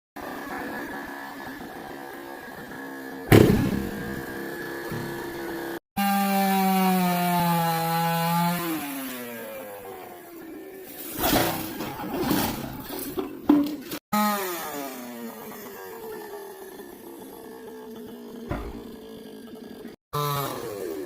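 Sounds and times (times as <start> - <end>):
chainsaw running: 0.2 - 11.1, 14.1 - 21.0
sharp knock: 3.3 - 4.0.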